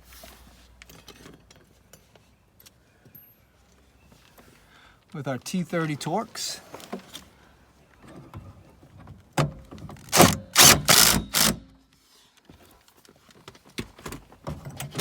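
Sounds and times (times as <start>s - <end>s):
power screwdriver bursts: 10.1s - 11.7s.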